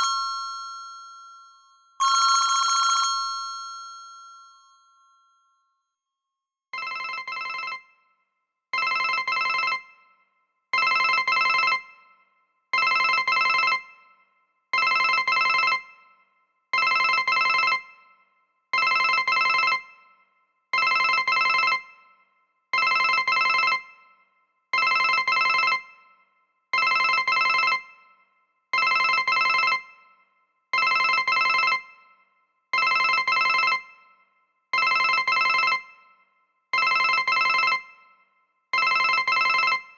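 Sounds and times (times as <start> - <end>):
trilling phone ringtone: 0.0 - 5.2.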